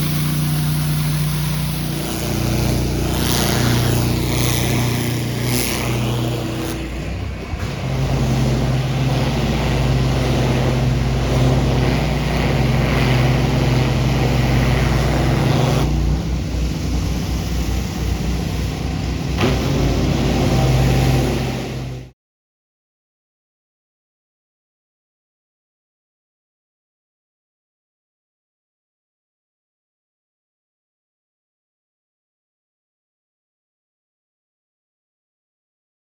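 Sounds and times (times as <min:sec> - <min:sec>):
engine running: 0:00.0 - 0:22.1.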